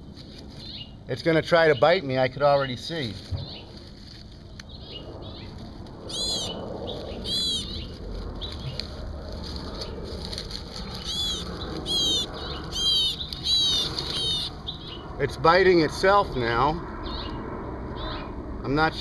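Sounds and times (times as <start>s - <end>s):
bird harsh calls: 4.7s - 8.9s, 10.8s - 15.2s, 17.0s - 18.4s
low rustle: 7.9s - 11.9s.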